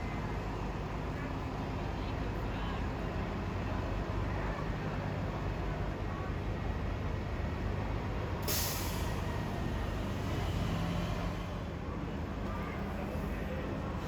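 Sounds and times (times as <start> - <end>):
bus engine running: 0.1 - 14.0
air brakes hissing: 8.4 - 9.3.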